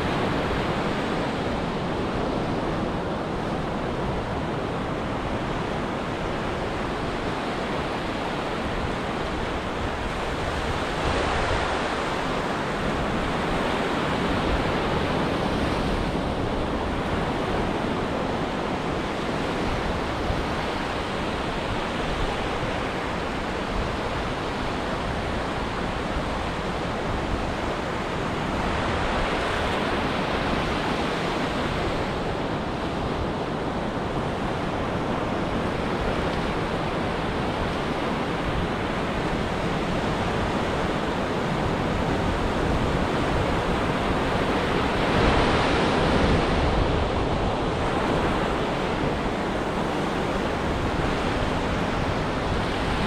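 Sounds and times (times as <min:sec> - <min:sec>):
ocean surf washing onto beach: 0:00.0 - 0:53.0.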